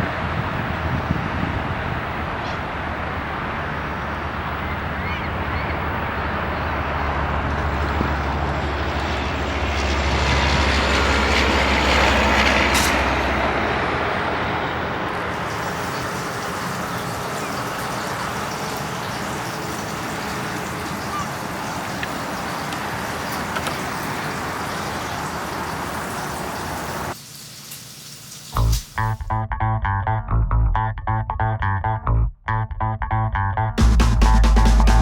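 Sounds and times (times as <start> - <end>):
vehicle passing with deep rumble: 0.0 - 27.2, 29.0 - 35.0
background hiss: 15.3 - 29.2.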